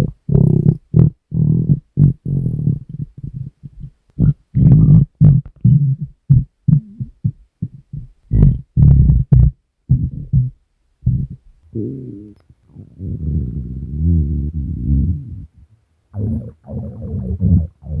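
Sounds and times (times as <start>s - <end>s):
stomach growling: 0.0s - 6.0s, 16.2s - 18.0s.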